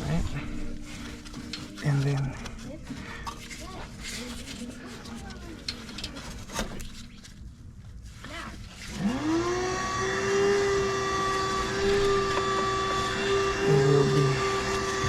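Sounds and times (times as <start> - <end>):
electric motor whining: 8.9 - 15.0.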